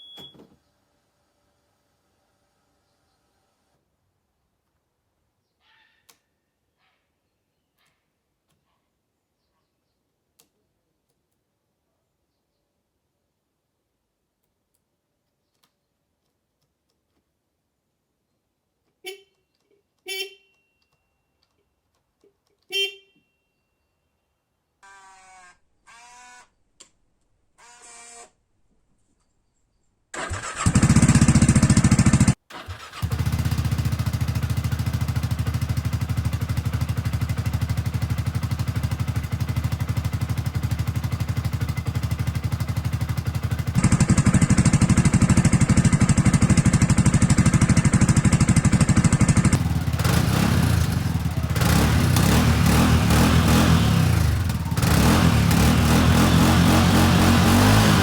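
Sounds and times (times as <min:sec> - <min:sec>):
short pitched beeps: 0:00.0 - 0:00.4
atv engine running: 0:30.2 - 0:58.0.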